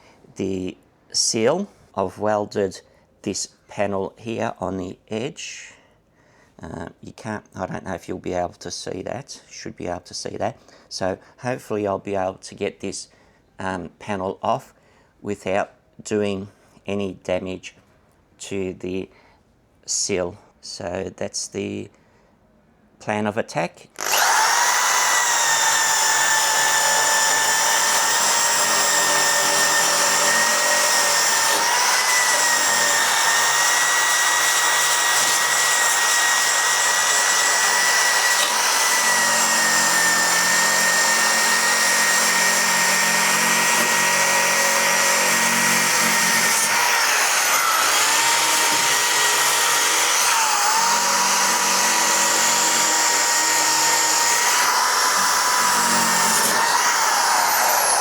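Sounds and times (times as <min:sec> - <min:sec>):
power tool whining on steel: 0:24.0 - 0:58.0.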